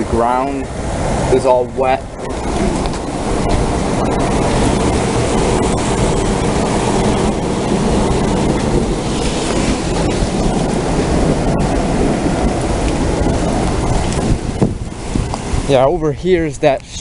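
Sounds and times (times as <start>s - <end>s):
heavy rain: 0.0s - 15.9s
wind rushing: 0.0s - 16.5s.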